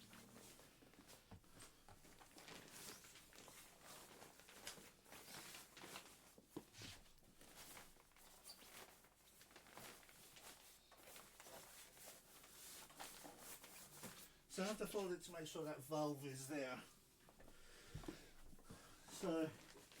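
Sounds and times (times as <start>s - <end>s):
rustling of camping mat being folded: 0.2s - 15.3s, 18.4s - 20.0s.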